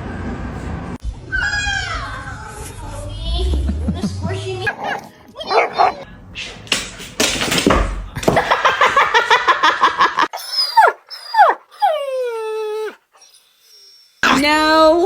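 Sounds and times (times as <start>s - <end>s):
dog whining: 4.7s - 6.0s, 10.3s - 14.2s
dog yipping: 4.7s - 6.0s, 10.4s - 13.4s.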